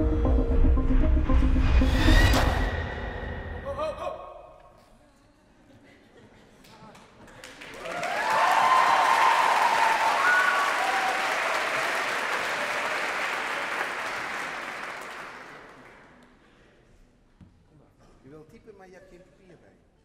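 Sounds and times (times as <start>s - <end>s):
audience applauding: 6.6s - 16.2s.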